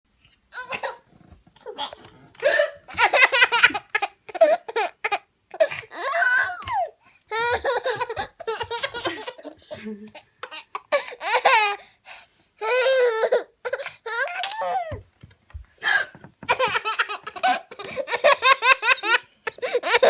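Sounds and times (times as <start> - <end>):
baby laughing: 0.5 - 11.8, 16.5 - 20.0
woman hiccupping: 15.8 - 16.3.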